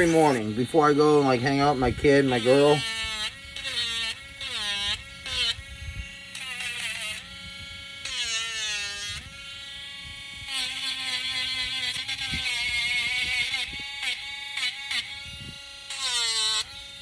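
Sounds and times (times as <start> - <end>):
wood grinding on sandpaper: 0.0 - 9.2
electric sander motor: 0.0 - 17.0.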